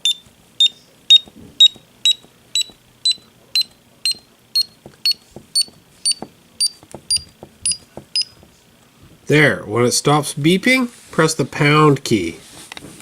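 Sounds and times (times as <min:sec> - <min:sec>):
short high alarm keypad beeps: 0:00.0 - 0:08.4.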